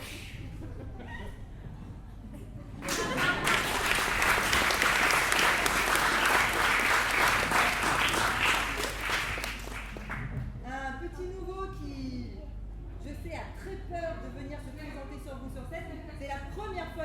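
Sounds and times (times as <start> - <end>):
voices among clapping: 2.8 - 10.3
audience applauding: 2.8 - 10.4.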